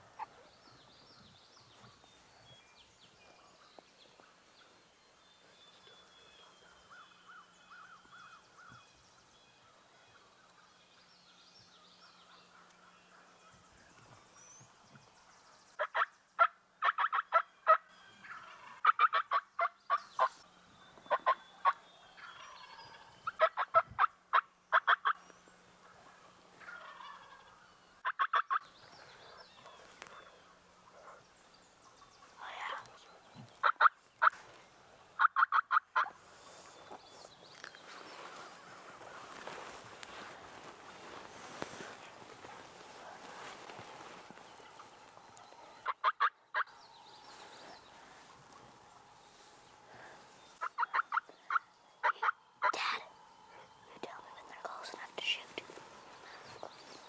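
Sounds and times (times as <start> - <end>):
faint songbird calls: 0.0 - 57.0
turkey yelping: 15.8 - 20.4, 21.1 - 25.2, 26.1 - 27.5, 28.1 - 28.6, 33.6 - 34.3, 35.2 - 36.1, 45.8 - 46.7, 50.6 - 52.8.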